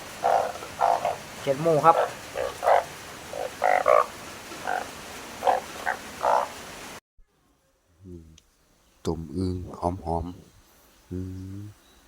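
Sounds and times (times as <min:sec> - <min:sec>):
frogs croaking: 0:00.0 - 0:06.8
steady hiss: 0:00.0 - 0:07.0, 0:08.1 - 0:12.0.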